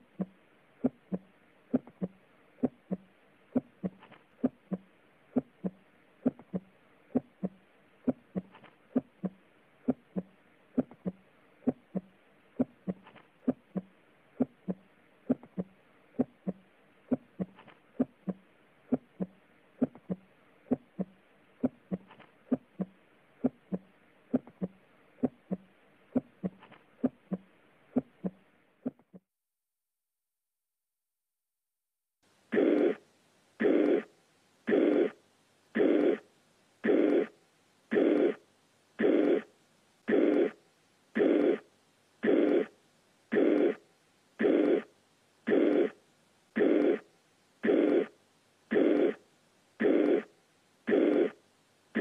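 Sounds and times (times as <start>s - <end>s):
faint steady hiss: 0.0s - 28.9s, 32.2s - 52.0s
heartbeat through a stethoscope: 0.0s - 29.2s.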